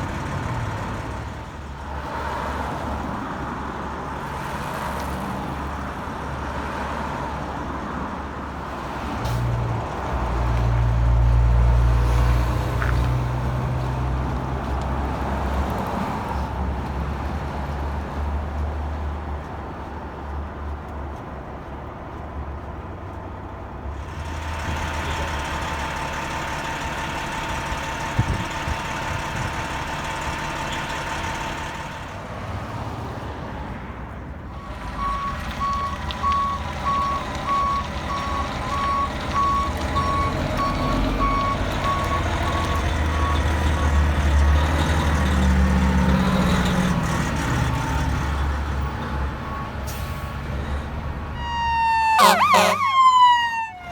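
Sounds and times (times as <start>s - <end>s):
heavy truck engine running: 0.0s - 33.2s, 34.4s - 53.9s
backup alarm beeping: 51.4s - 53.9s.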